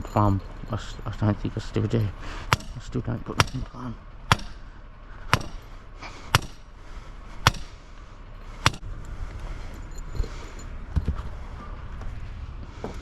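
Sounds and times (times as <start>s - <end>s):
hammer striking pegs: 2.4s - 4.7s, 5.3s - 5.7s, 6.3s - 6.8s, 7.4s - 7.8s, 8.6s - 8.9s.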